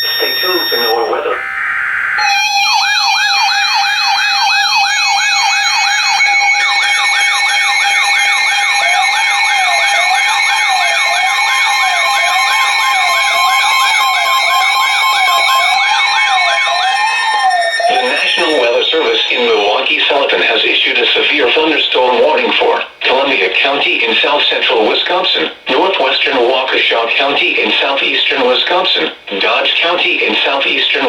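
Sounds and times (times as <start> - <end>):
slow warbling siren: 0.0 - 19.5
yelping siren sweeps: 0.0 - 19.5
steady siren tone: 0.0 - 19.7.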